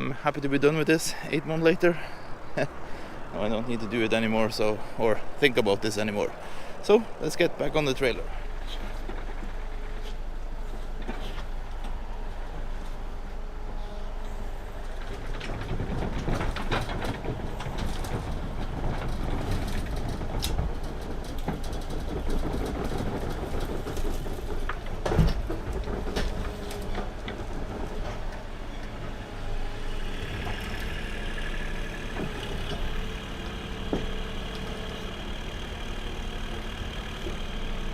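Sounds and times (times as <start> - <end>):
excavator diesel engine running: 0.0 - 37.9
metal clanks and knocks: 14.8 - 37.8.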